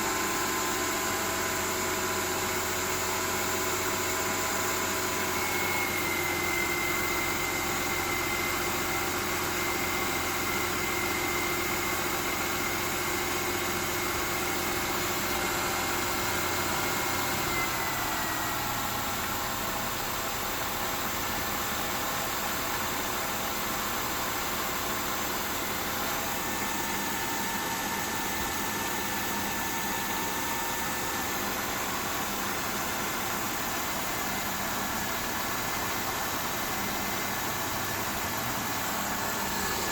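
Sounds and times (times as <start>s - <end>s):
car engine idling: 11.8s - 39.9s.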